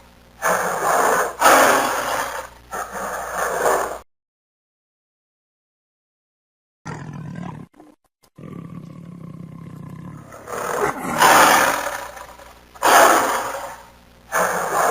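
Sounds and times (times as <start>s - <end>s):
big cat growling: 0.4s - 4.0s, 6.9s - 14.9s
big cat roaring: 0.4s - 4.0s, 6.9s - 14.9s.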